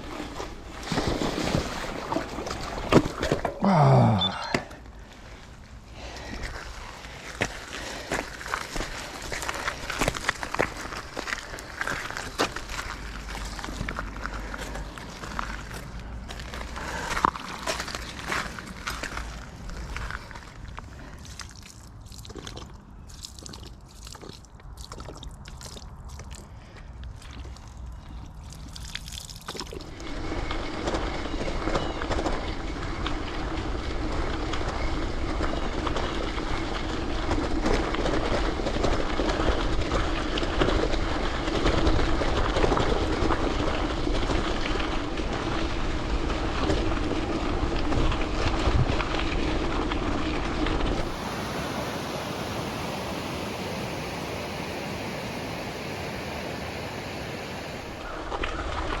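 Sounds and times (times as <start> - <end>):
bike tyres rattling on gravel: 5.0 - 24.5, 27.4 - 53.4, 57.7 - 59.0.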